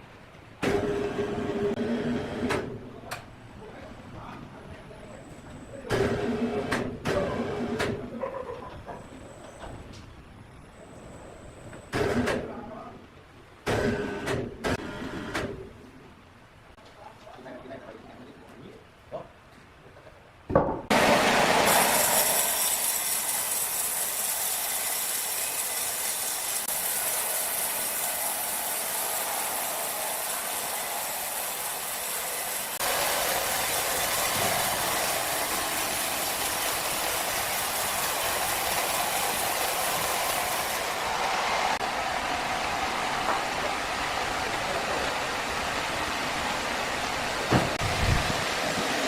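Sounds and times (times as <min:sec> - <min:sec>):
sawmill machinery running: 0:20.9 - 0:49.0.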